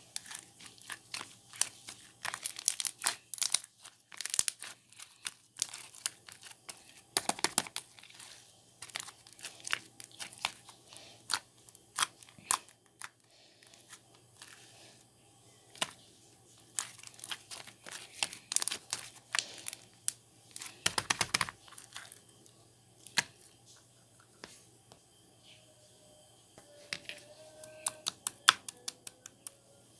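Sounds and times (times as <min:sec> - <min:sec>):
slime squishing: 0:00.0 - 0:14.7, 0:16.7 - 0:19.9.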